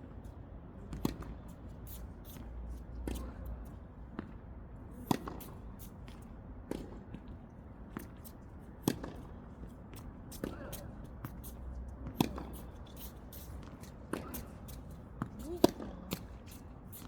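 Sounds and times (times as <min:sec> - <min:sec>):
tennis balls struck by rackets: 0:05.0 - 0:05.6, 0:08.8 - 0:09.3, 0:12.0 - 0:12.8, 0:13.5 - 0:16.4
small ticks and scuffs: 0:10.4 - 0:15.4.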